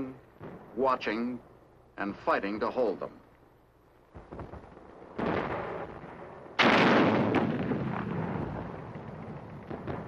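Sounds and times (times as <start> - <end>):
artillery blasts: 0.4 - 1.0, 4.1 - 10.0.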